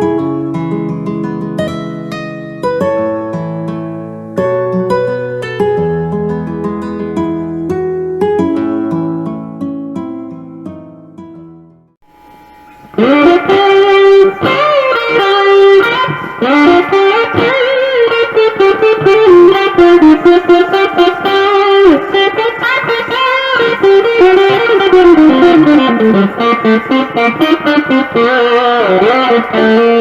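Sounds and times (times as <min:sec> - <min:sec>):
distorted electric guitar lead: 0:12.0 - 0:30.0.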